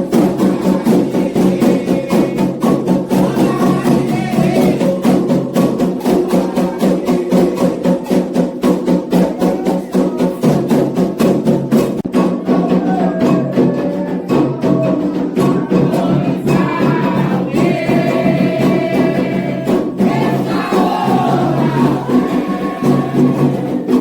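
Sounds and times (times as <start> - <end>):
faint singing: 0.0 - 10.9, 12.2 - 24.0
hand drums: 0.0 - 24.0.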